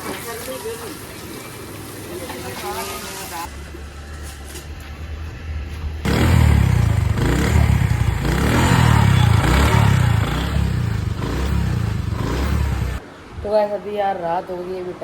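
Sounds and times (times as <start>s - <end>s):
motorcycle engine revving: 6.0s - 13.0s.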